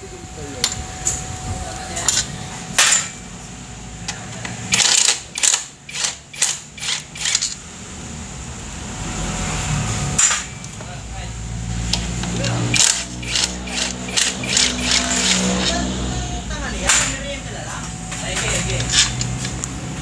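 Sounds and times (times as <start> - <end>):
low steady hum: 0.0 - 20.0
metal tools clinking and knocking: 12.4 - 15.8, 18.1 - 19.6.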